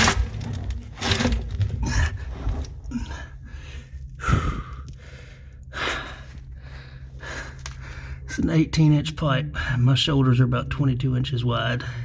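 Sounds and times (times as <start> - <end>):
man breathing hard: 3.0 - 8.3.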